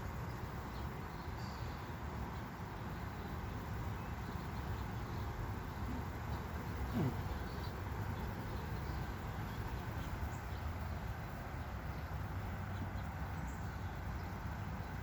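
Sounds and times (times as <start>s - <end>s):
bees buzzing: 5.0s - 10.4s.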